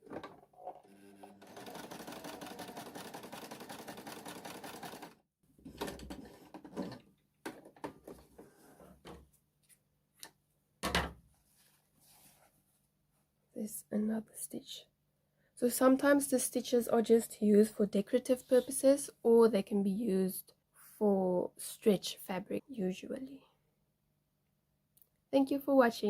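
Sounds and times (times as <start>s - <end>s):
sewing machine stitching: 0.0s - 5.2s.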